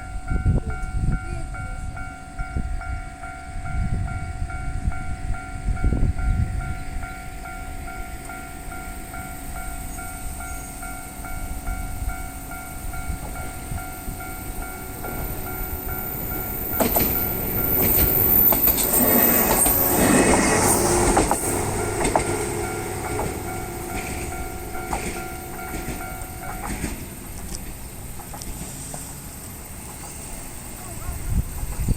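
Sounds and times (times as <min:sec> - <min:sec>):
level-crossing warning bell ringing: 0:00.0 - 0:31.9
train wheels clacking over rail joints: 0:14.9 - 0:29.2.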